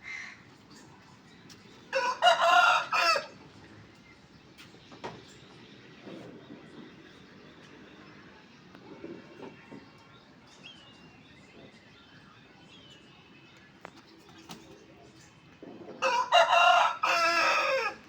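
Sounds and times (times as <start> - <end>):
rooster crowing: 1.9 - 3.3, 16.0 - 18.0.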